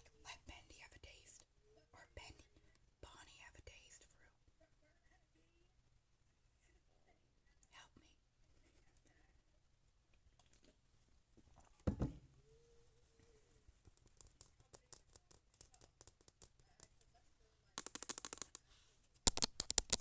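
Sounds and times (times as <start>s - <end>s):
handling thump: 11.9s - 12.3s
rapid tapping clicks: 17.8s - 18.6s.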